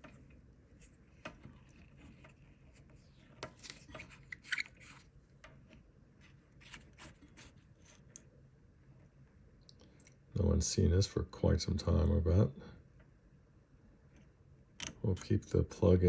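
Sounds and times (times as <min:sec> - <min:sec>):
handling clicks and rubbing: 0:00.0 - 0:08.3.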